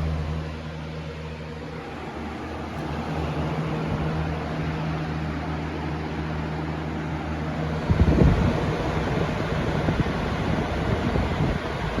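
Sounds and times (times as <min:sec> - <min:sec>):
box fan motor hum: 0:00.0 - 0:12.0
fan air rushing: 0:00.0 - 0:12.0.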